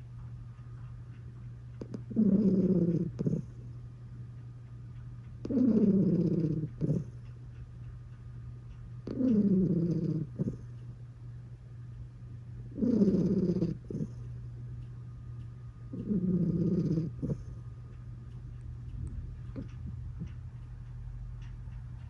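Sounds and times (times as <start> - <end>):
pet snoring with purring rumble: 1.8 - 3.7, 5.4 - 7.3, 9.0 - 10.8, 12.6 - 14.3, 15.9 - 17.6, 19.5 - 20.4.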